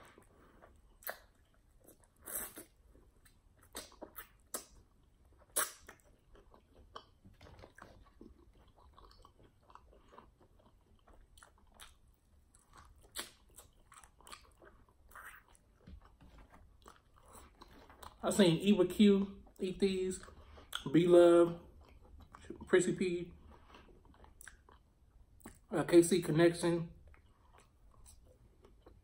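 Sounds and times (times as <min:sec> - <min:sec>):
crunching and chewing chicken wings: 0:00.0 - 0:18.3.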